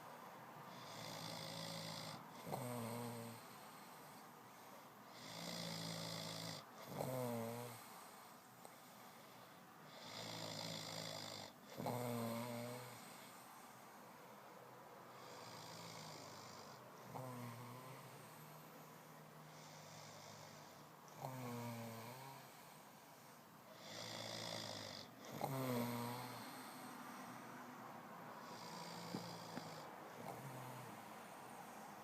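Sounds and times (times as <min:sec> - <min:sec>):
man snoring: 0:00.7 - 0:04.3, 0:05.1 - 0:08.2, 0:09.9 - 0:13.4, 0:15.1 - 0:18.7, 0:19.5 - 0:22.8, 0:23.7 - 0:27.6, 0:28.4 - 0:32.0.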